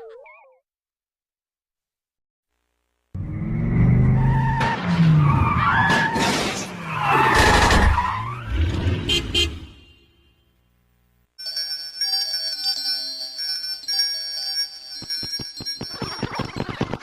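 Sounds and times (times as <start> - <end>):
cartoon tyres skidding: 3.2 - 9.8
cartoon car running: 15.0 - 17.0.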